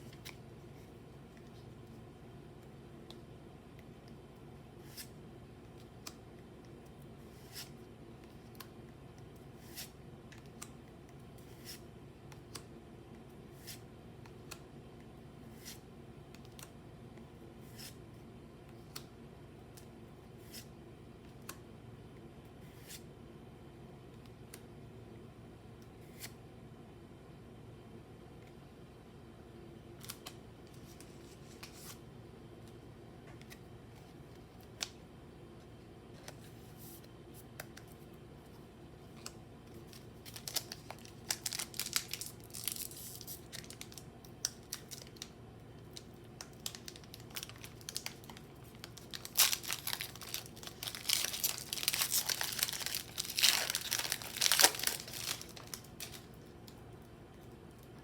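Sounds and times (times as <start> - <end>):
foil wrapper crinkling: 39.8 - 45.3, 45.9 - 56.8
wrapper tearing and crumpling: 39.9 - 45.2, 46.4 - 56.3.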